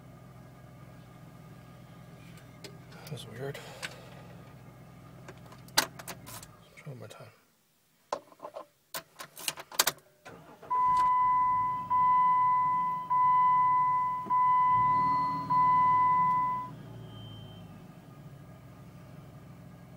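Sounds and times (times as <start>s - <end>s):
car warning chime beeps: 10.6s - 17.8s.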